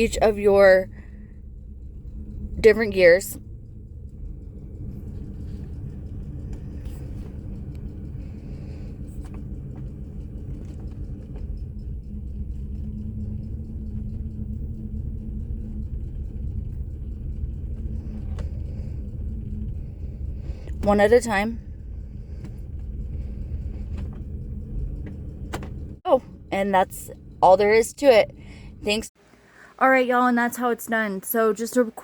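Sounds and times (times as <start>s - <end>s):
truck engine idling: 0.0s - 29.1s.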